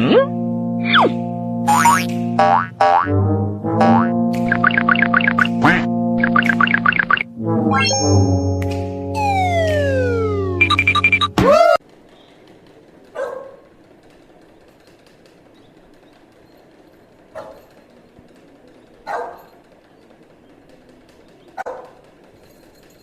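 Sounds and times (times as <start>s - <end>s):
dog barking: 13.2s - 13.7s, 17.3s - 17.7s, 19.0s - 19.5s, 21.6s - 22.0s.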